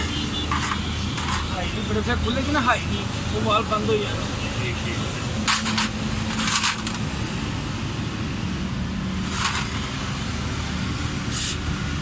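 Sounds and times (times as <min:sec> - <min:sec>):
short hissing bursts: 0:11.3 - 0:11.6.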